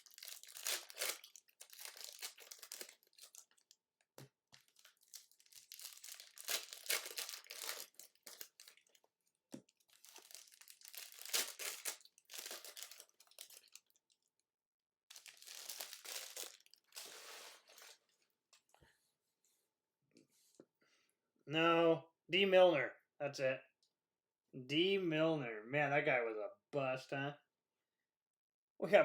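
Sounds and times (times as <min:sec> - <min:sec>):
card packs tearing open: 0:00.0 - 0:03.7, 0:04.6 - 0:09.0, 0:09.9 - 0:13.9, 0:15.1 - 0:17.9
wrappers crinkling: 0:00.0 - 0:03.8, 0:04.5 - 0:14.2, 0:15.1 - 0:18.0.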